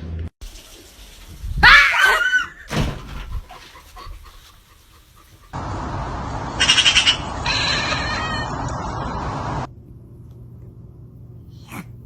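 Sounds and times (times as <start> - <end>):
animal cry sliding in pitch: 6.6 - 8.7.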